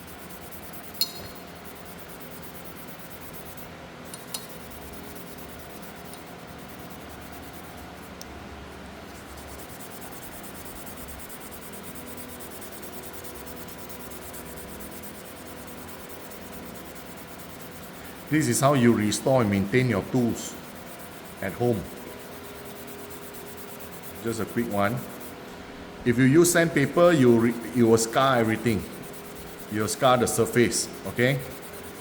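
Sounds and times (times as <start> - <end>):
sharp click: 1.0 - 1.4
scrubbing pad rubbing metal tool: 26.4 - 32.0.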